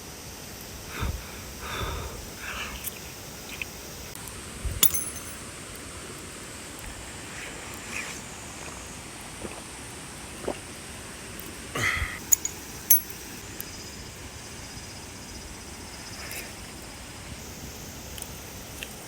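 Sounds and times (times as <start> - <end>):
steady outdoor hiss: 0.0 - 19.0
sharp metallic clinks: 4.8 - 5.4, 12.2 - 13.4.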